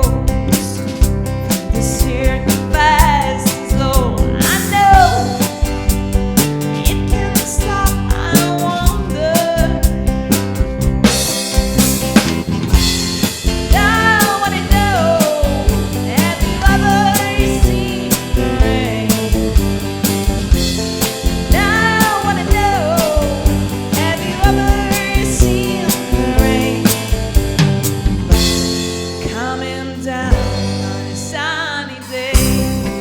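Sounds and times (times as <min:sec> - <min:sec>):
singer: 0:00.0 - 0:01.0, 0:01.7 - 0:05.6, 0:06.6 - 0:10.0, 0:13.7 - 0:19.6, 0:21.5 - 0:27.2, 0:29.2 - 0:33.0
bass: 0:00.0 - 0:33.0
drum kit: 0:00.0 - 0:33.0
guitar: 0:00.0 - 0:33.0.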